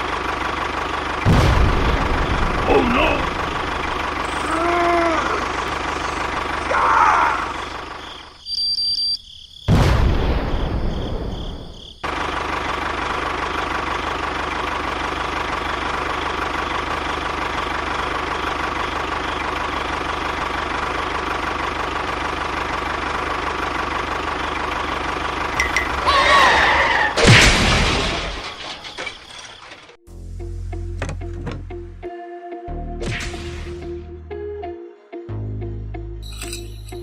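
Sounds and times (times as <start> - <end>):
engine running steadily: 0.0 - 8.3, 12.0 - 28.9
loud thump: 27.2 - 28.6.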